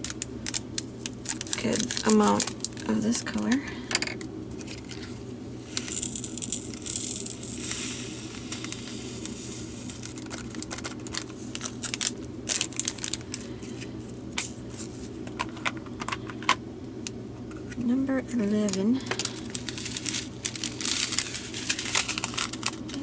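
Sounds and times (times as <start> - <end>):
tiny beads rattling into container: 5.7 - 13.2, 18.7 - 23.0.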